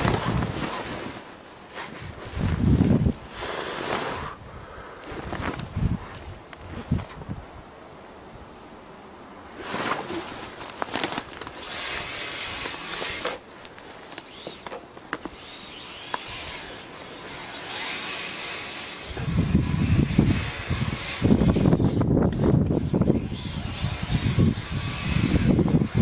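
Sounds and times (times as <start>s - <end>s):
electric motors whining: 11.4s - 13.4s, 14.1s - 26.0s.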